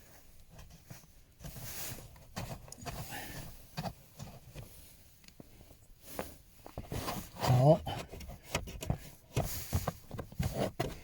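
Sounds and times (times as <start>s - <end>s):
hands clicking and rubbing plastic: 8.0s - 11.0s.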